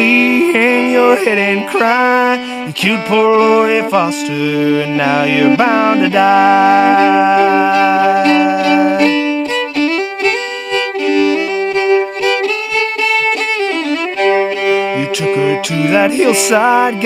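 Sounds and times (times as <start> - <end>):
man singing: 0.0 - 9.3, 14.8 - 17.0
fiddle playing folk melody: 0.0 - 17.0.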